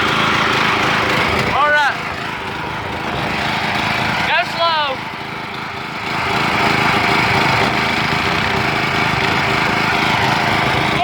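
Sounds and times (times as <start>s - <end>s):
lawn mower engine running: 0.0s - 11.0s.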